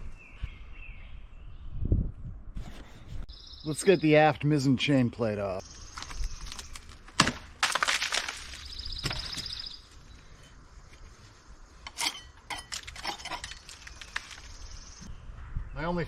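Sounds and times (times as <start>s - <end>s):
hand tools clinking on metal: 11.8s - 14.2s.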